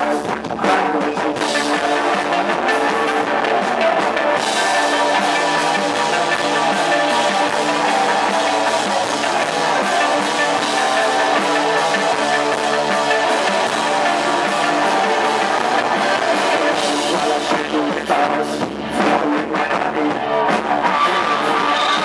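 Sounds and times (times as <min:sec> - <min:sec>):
electric guitar chords: 0:00.0 - 0:22.0
post-punk band playing live: 0:00.0 - 0:22.0.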